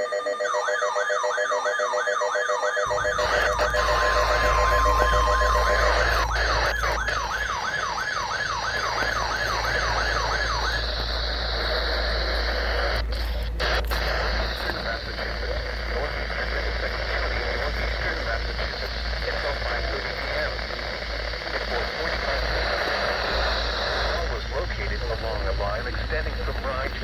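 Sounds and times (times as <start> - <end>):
electronic siren yelping: 0.0 - 12.5
low hum: 2.8 - 27.0.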